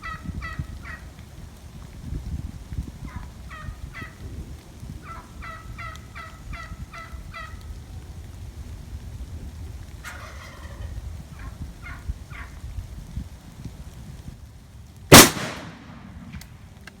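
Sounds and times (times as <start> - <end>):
turkeys yelping: 0.0 - 1.1, 3.0 - 4.2, 5.0 - 7.8, 10.0 - 12.6
turkey rattling gobble: 0.0 - 1.2, 3.0 - 4.2, 5.0 - 7.8, 10.0 - 12.6
steady low rumble: 0.0 - 17.0.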